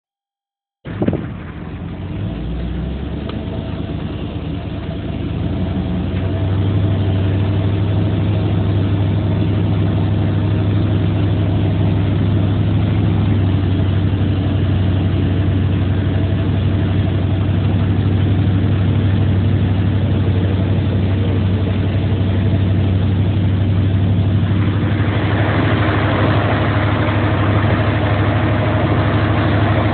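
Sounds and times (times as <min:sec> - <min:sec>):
vehicle engine idling: 0:00.8 - 0:29.9
rushing noise: 0:19.0 - 0:29.9.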